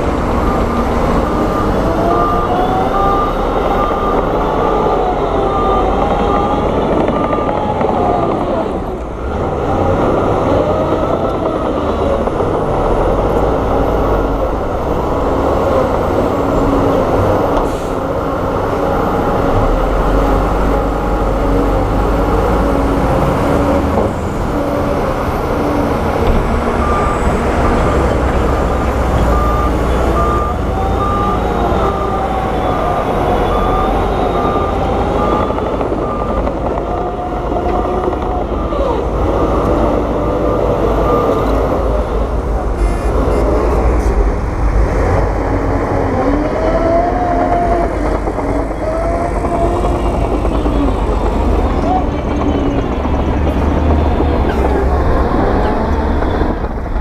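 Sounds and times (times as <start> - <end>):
reversing alarm beeping: 0.0 - 24.0, 26.2 - 44.1
heavy diesel engines running: 0.0 - 57.0.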